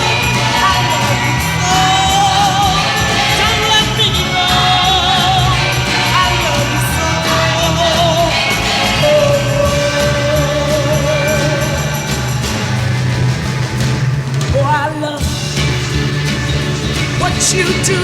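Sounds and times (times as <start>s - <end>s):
person singing with vibrato: 0.0s - 12.7s, 16.9s - 18.0s
soul music with band and orchestra: 0.0s - 18.0s.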